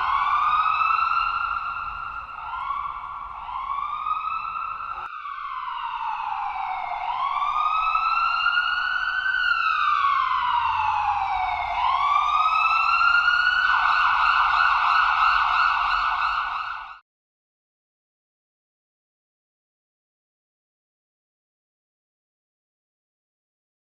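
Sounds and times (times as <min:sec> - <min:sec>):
ambulance siren wailing: 0:00.0 - 0:17.0.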